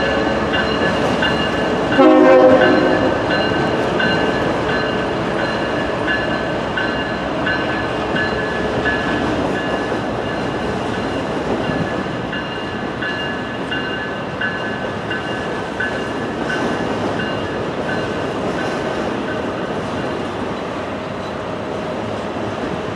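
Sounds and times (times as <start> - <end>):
bell-like ringing: 0.0 - 16.1
train wheels rumbling on rail: 0.0 - 22.9.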